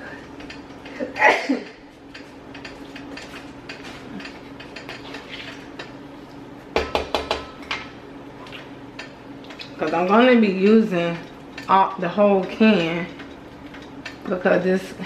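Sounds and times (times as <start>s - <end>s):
sharp knocks: 6.8s - 7.5s.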